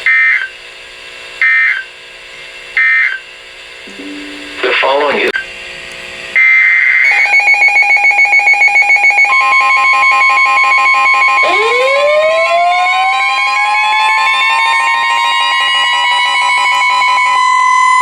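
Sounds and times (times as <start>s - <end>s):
steady electronic alert tone: 3.9s - 5.1s
siren-like winding tone: 7.1s - 18.0s.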